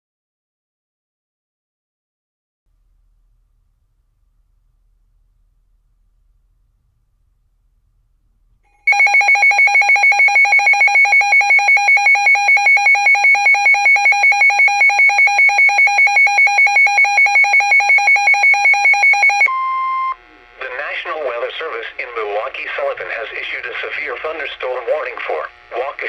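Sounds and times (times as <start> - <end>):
rapid electronic alarm beeping: 8.9 - 20.2.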